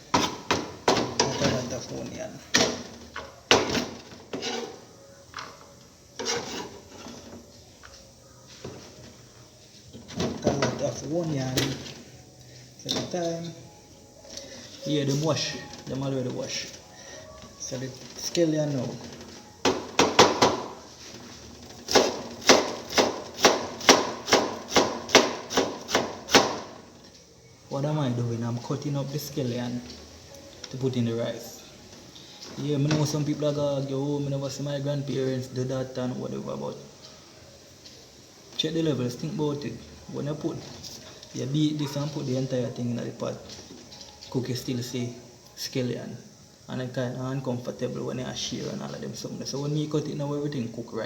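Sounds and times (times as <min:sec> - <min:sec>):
knife knocking and scraping board: 0:00.1 - 0:01.6, 0:02.6 - 0:04.8, 0:06.2 - 0:07.2
knife chopping on cutting board: 0:21.9 - 0:26.7.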